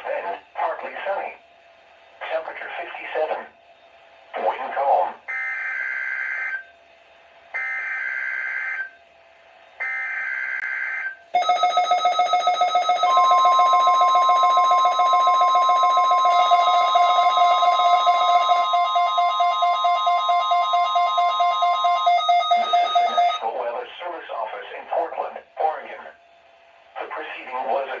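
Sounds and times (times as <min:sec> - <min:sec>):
steady single-pitch alarm tone: 0:05.3 - 0:06.7, 0:07.5 - 0:09.0, 0:09.8 - 0:23.4
electronic alarm beeping rapidly: 0:09.8 - 0:23.4.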